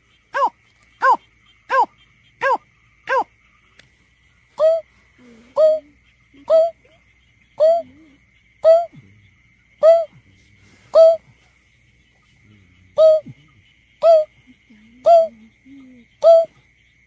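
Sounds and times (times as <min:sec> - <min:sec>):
bird hooting call: 0:04.6 - 0:04.9, 0:05.6 - 0:06.9, 0:07.6 - 0:08.9, 0:09.8 - 0:10.1, 0:10.9 - 0:11.2, 0:13.0 - 0:13.4, 0:14.0 - 0:14.3, 0:14.9 - 0:16.6.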